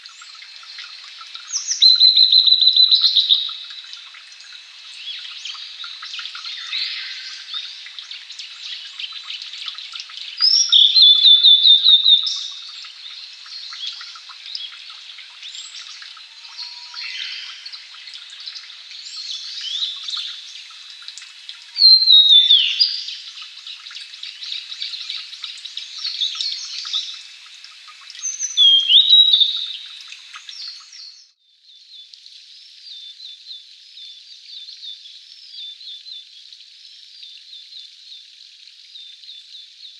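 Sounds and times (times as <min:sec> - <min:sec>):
flycatcher singing: 0:01.4 - 0:03.6, 0:10.3 - 0:14.8, 0:21.7 - 0:25.2, 0:28.2 - 0:31.4.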